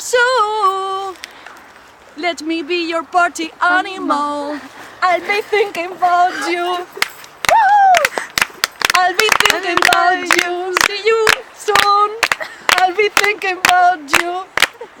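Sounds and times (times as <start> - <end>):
women singing and calling: 0.0 - 1.2, 2.2 - 15.0
hand claps: 7.0 - 14.8
high falling whoop: 7.4 - 8.3.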